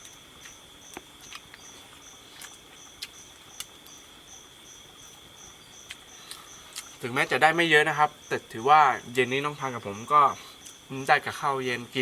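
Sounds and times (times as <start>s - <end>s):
insect high trill: 0.0s - 12.0s
insect pulsing call: 0.0s - 12.0s.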